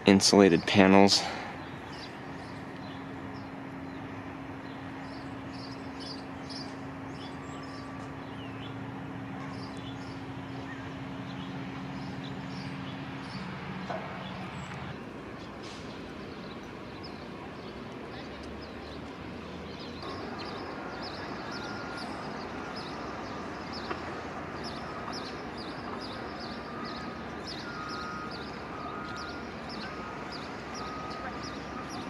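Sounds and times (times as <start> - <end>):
low mechanical hum: 0.0 - 32.0
small birds chirping: 0.1 - 32.0.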